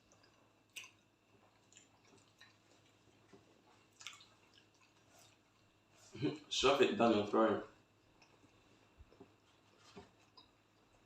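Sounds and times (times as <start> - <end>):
wet eating sounds: 0.0 - 6.5, 7.8 - 11.0
soft mouth clicks: 0.1 - 1.0.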